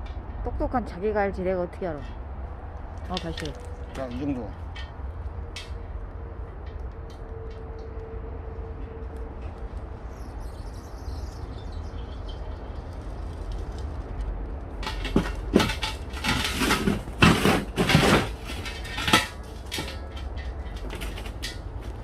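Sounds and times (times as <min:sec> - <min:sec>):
steady low rumble: 0:00.0 - 0:22.0
metal clanks and scraping: 0:02.9 - 0:05.9, 0:14.7 - 0:22.0.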